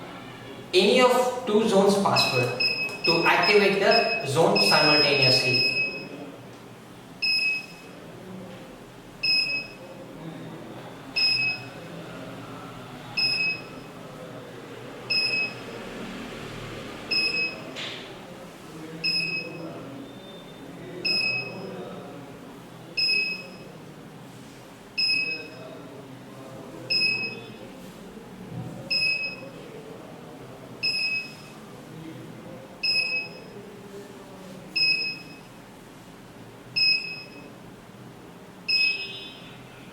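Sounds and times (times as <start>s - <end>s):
alarm panel beeping: 2.0s - 6.2s, 7.2s - 8.0s, 9.2s - 9.8s, 11.2s - 11.7s, 13.2s - 13.8s, 15.1s - 15.6s, 17.1s - 17.6s, 19.0s - 21.7s, 26.9s - 27.6s, 28.9s - 29.5s, 30.8s - 31.5s, 32.8s - 33.5s, 36.8s - 37.4s, 38.7s - 39.5s.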